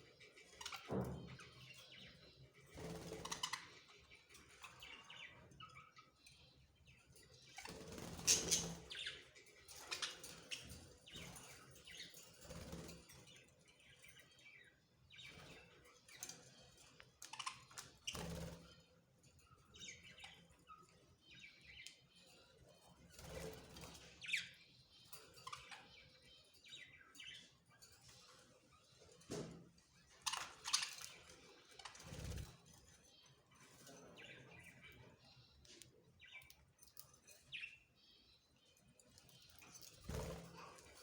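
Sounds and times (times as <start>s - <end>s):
wings rustling and fluttering: 2.6s - 3.8s, 7.6s - 9.1s, 29.0s - 32.9s, 39.6s - 41.0s
budgerigars chirping: 7.5s - 12.7s.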